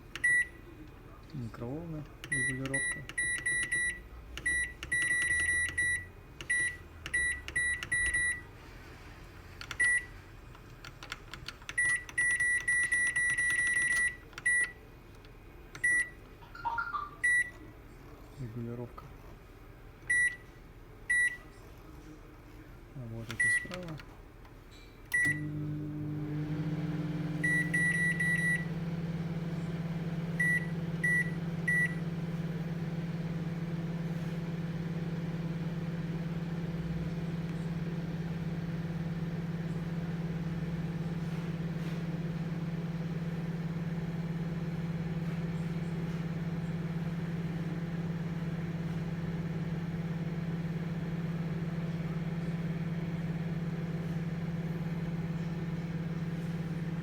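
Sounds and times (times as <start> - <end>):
microwave humming: 0.0 - 17.9, 19.7 - 21.5, 25.0 - 57.0
microwave button beeps: 0.2 - 0.6, 2.3 - 8.5, 9.8 - 10.1, 11.7 - 14.8, 15.8 - 17.6, 20.1 - 20.4, 21.1 - 21.4, 23.4 - 23.9, 25.1 - 57.0.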